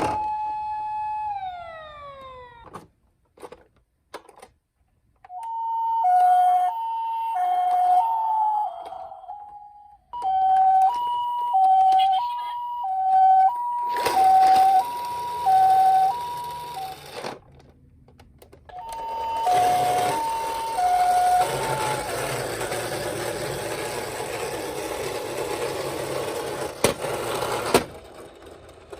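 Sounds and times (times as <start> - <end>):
toy two-tone siren: 0.0 - 2.8, 5.3 - 17.3, 18.7 - 24.9.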